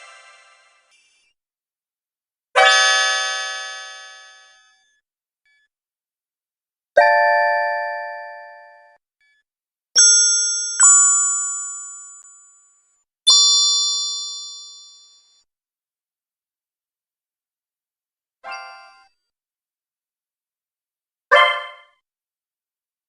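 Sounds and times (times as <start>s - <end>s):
bright bell-like chimes: 10.0s - 15.2s.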